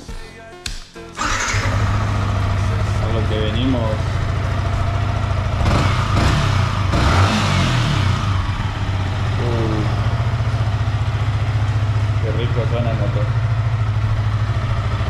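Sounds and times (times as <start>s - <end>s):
motorcycle engine idling and revving: 1.2s - 15.0s.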